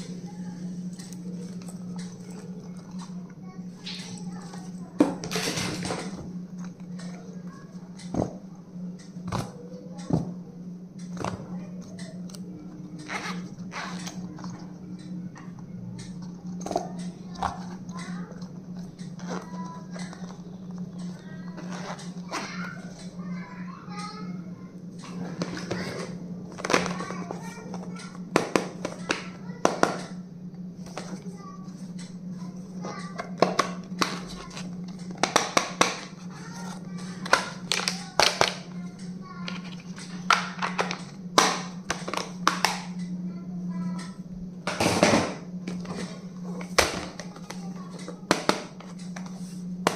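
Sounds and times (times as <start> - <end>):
steady low hum: 0.0 - 49.9
stationery rustling and scraping: 15.4 - 23.2, 24.8 - 43.1, 44.7 - 49.9.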